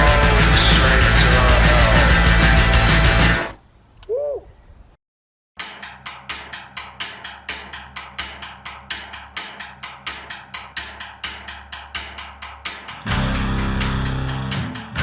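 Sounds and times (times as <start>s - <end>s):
punk rock drum beat and bass: 0.0s - 3.6s, 9.5s - 15.0s.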